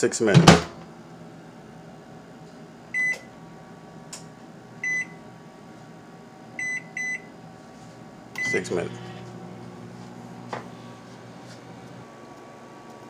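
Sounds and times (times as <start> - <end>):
low steady hum: 2.8 - 12.9
microwave keypad beeps: 3.0 - 3.3, 4.8 - 5.2, 6.6 - 7.3, 8.4 - 8.8.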